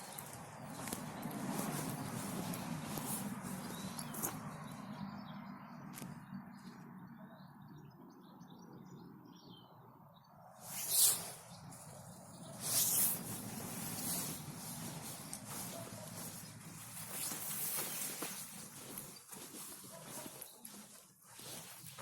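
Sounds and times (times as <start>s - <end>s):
rustling noise: 0.0s - 4.6s, 10.6s - 22.0s
faint songbird chirps: 0.0s - 21.8s.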